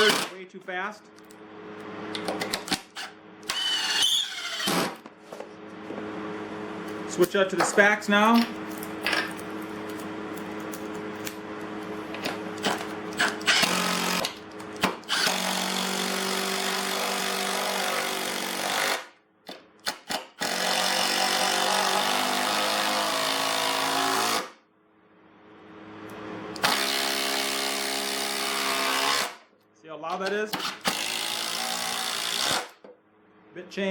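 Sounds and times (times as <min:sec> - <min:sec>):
impact driver driving screws into wood: 0:00.0 - 0:00.4, 0:02.2 - 0:05.0, 0:12.6 - 0:24.5, 0:26.6 - 0:29.4, 0:30.2 - 0:32.9.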